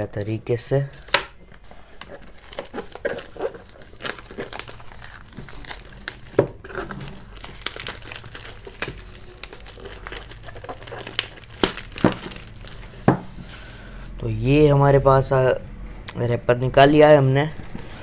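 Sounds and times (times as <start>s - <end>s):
plastic wrapper crinkling: 1.0s - 13.1s.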